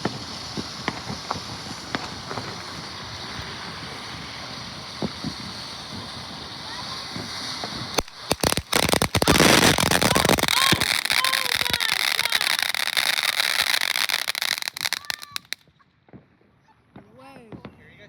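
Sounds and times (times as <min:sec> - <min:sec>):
fireworks hissing spray: 0:00.0 - 0:15.6
fireworks dense crackling: 0:00.0 - 0:16.4
fireworks sharp bangs: 0:00.0 - 0:16.4.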